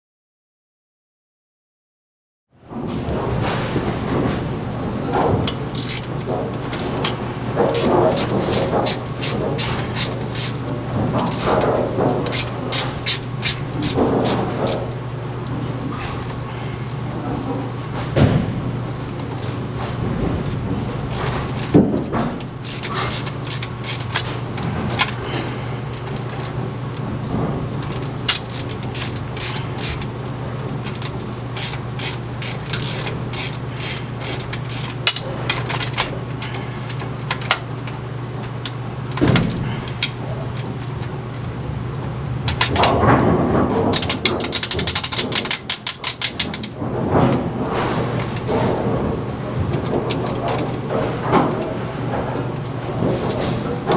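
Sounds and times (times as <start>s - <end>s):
mechanical clicks and clatter: 3.1s - 15.6s, 20.2s - 41.5s, 42.4s - 53.9s
motor hum: 3.1s - 43.3s.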